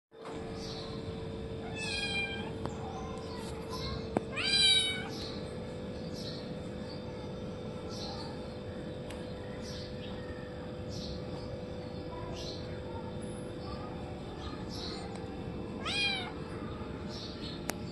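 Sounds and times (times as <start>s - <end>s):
steady hum: 0.2s - 17.9s
kitten meowing: 1.6s - 2.5s, 4.3s - 5.1s, 15.8s - 16.4s.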